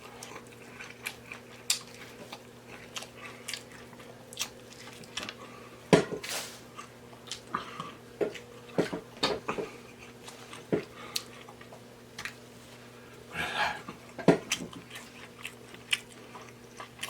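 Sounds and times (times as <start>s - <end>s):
chewing and lip-smacking: 0.0s - 5.6s, 9.7s - 12.4s, 13.8s - 17.0s
faint steady hum: 0.0s - 17.0s.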